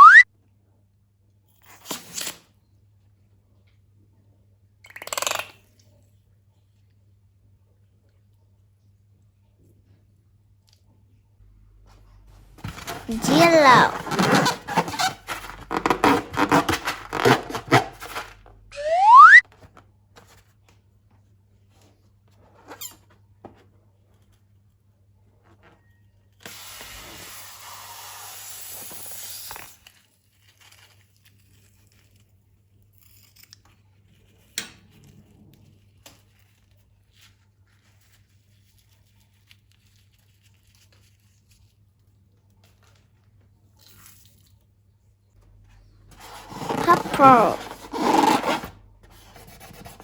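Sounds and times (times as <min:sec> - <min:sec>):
hiss: 0:26.5 - 0:29.5.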